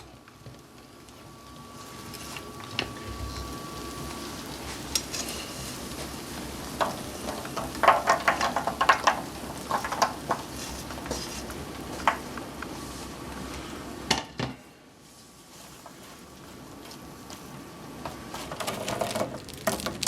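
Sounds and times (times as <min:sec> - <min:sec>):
sugar sizzling: 0:00.0 - 0:14.1, 0:15.0 - 0:20.0
almonds scraping in a pan: 0:01.8 - 0:12.2.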